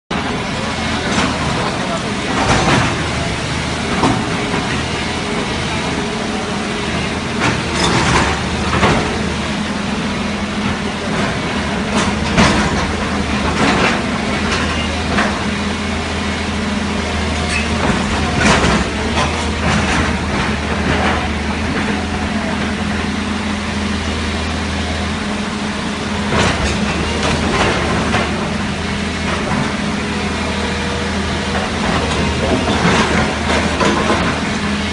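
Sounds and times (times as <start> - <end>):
bulldozer diesel engine running: 0.1 - 34.9
structure knocking and crashing: 11.2 - 15.6, 17.4 - 22.2.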